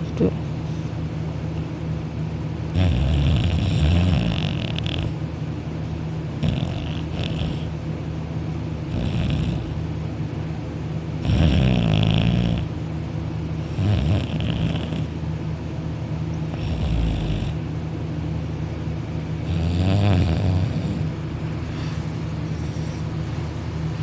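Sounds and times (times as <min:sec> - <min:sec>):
steady low hum: 0:00.0 - 0:24.0
man snoring: 0:02.7 - 0:05.2, 0:06.4 - 0:07.7, 0:08.9 - 0:09.8, 0:11.2 - 0:12.7, 0:13.7 - 0:15.1, 0:16.5 - 0:17.6, 0:19.4 - 0:21.1.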